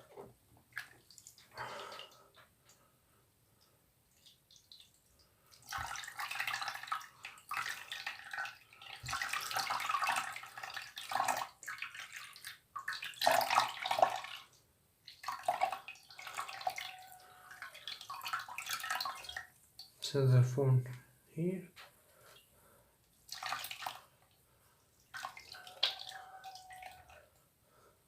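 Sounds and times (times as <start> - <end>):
tap water running and splashing: 4.1 - 19.9, 23.3 - 24.2, 25.0 - 27.2.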